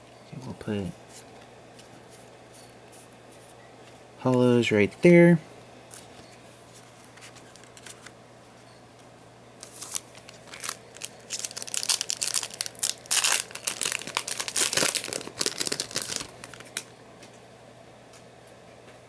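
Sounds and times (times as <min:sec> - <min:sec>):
foil wrapper crinkling: 0:09.6 - 0:16.9.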